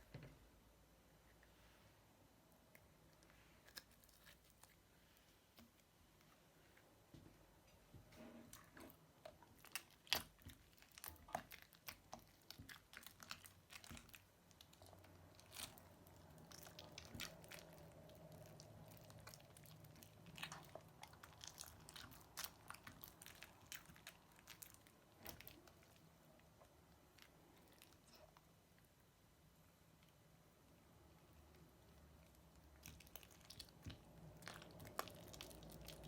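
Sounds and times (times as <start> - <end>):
crunchy slime crackling and popping: 8.6 - 28.2, 31.9 - 36.0.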